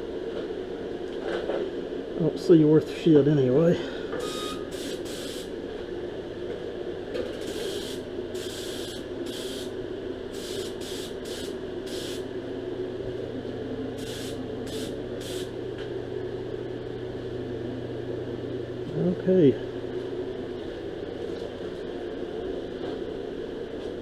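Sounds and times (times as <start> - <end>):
steady low hum: 0.0 - 24.0
spray gun hiss bursts: 4.8 - 5.5, 7.4 - 9.7, 10.4 - 12.3, 14.0 - 15.5.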